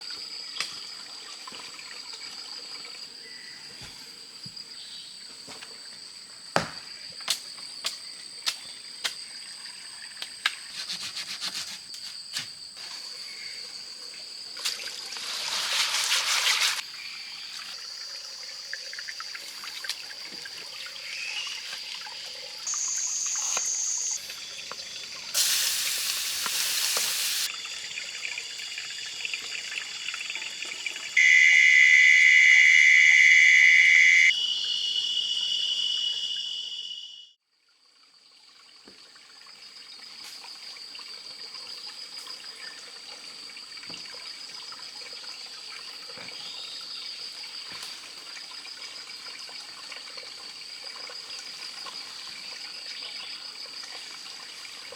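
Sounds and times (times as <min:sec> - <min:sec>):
trickling water: 0:00.0 - 0:06.3, 0:07.8 - 0:31.4, 0:37.5 - 0:54.9
high-pitched insect calls: 0:20.8 - 0:37.4
loud hissing bursts: 0:25.4 - 0:27.5.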